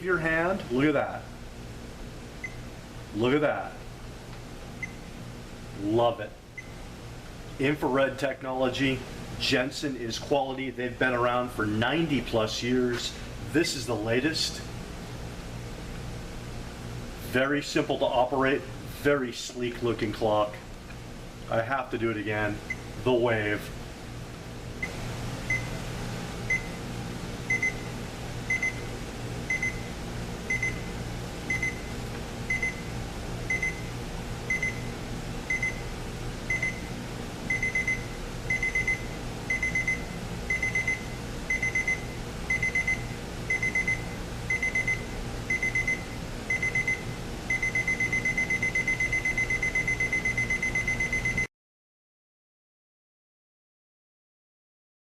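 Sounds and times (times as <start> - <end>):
steady low hum: 0.0 - 51.5
alarm clock buzzer beeping: 27.5 - 27.8, 28.5 - 28.8, 29.5 - 29.9, 30.5 - 30.9, 31.5 - 31.9, 33.5 - 33.9, 37.5 - 51.5.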